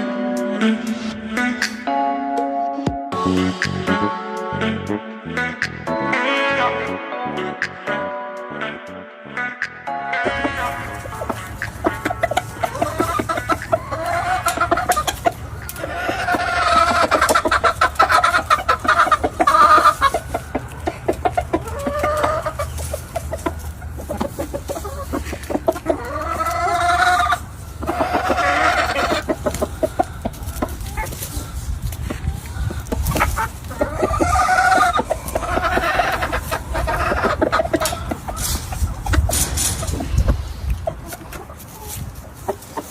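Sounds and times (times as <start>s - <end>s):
chickens clucking: 10.1s - 42.9s
roosters crowing: 10.4s - 40.2s.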